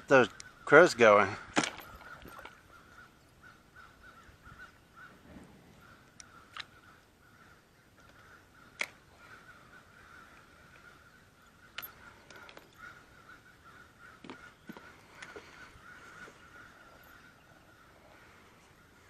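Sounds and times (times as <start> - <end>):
distant crows cawing: 0.0 - 19.0.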